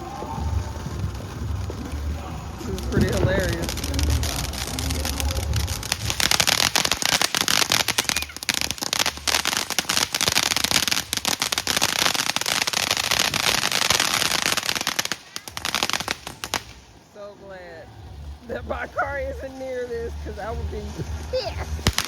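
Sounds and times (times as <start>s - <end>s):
firework crackling pops: 0.0s - 22.0s.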